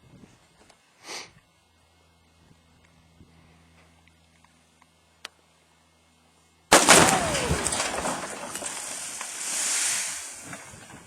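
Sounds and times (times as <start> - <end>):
explosion blast with rumbling echo: 6.7 - 9.8.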